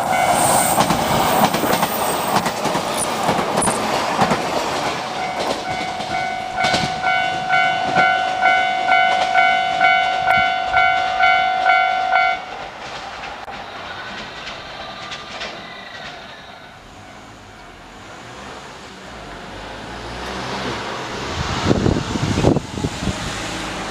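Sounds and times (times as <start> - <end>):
train clattering over rails: 0.0 - 23.9
level crossing alarm ringing: 5.1 - 12.5.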